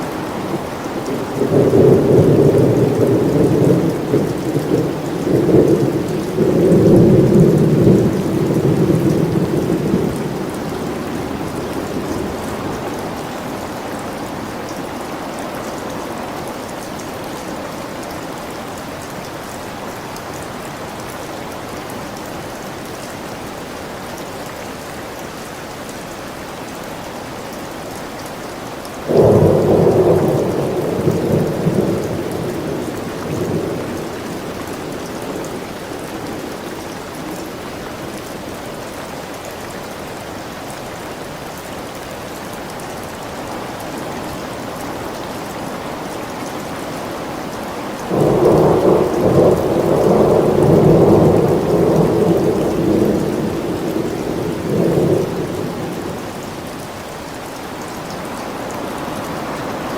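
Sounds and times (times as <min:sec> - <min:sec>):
steady rain: 0:00.0 - 0:59.9
rolling thunder: 0:29.1 - 0:36.5, 0:48.0 - 0:56.4.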